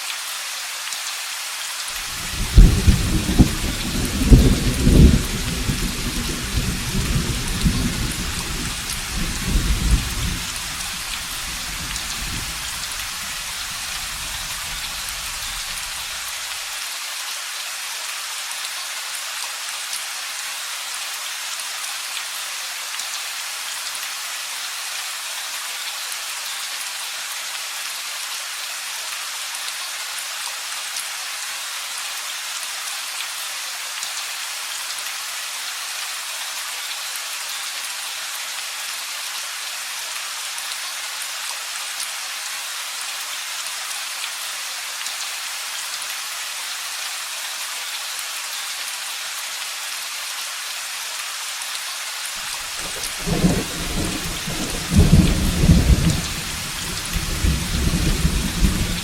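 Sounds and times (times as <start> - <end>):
steady rain: 0.0 - 59.0
low roll of thunder: 2.2 - 12.8, 52.8 - 59.0.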